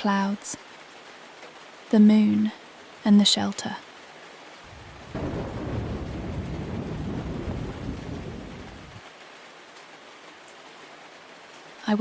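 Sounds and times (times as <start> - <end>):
heavy rain: 0.0 - 12.0
thunder rumbling: 4.7 - 9.0.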